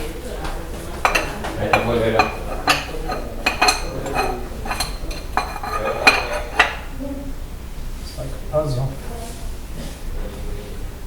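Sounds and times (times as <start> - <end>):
dishes and cutlery clinking: 0.0 - 6.9.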